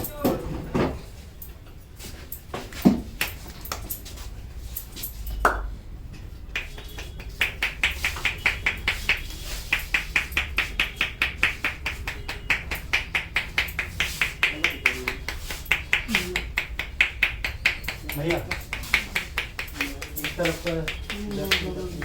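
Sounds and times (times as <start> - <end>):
hands striking head: 6.5 - 22.0.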